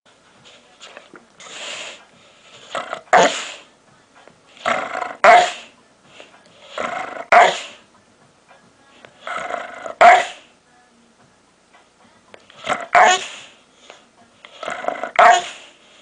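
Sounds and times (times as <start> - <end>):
dog growl-barking: 2.6 - 3.6, 4.6 - 5.7, 6.7 - 7.8, 9.2 - 10.4, 12.6 - 13.5, 14.6 - 15.7.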